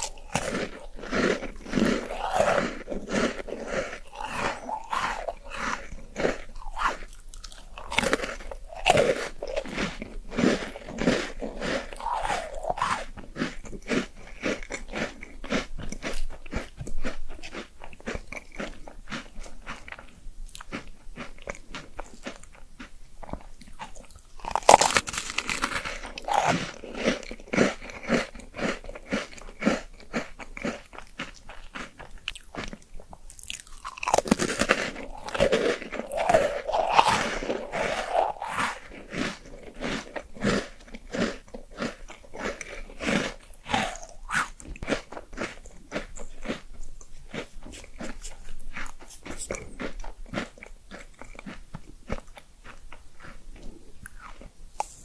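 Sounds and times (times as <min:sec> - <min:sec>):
person chewing and crunching: 0:00.0 - 0:55.0.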